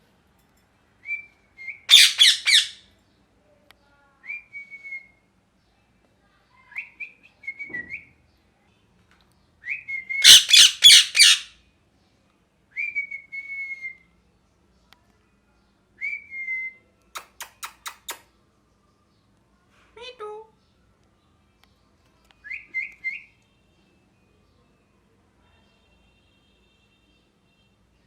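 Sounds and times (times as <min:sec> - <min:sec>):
parakeet whistled notes: 0:01.8 - 0:02.8, 0:10.2 - 0:11.4
parakeet harsh screech: 0:01.9 - 0:02.8, 0:10.2 - 0:11.5.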